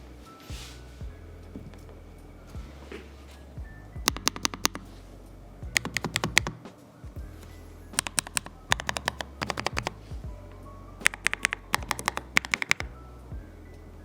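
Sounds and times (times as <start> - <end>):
background music: 0.0 - 14.0
mechanical keyboard key clicks: 4.1 - 4.8, 5.8 - 6.6, 8.0 - 10.0, 11.0 - 12.9.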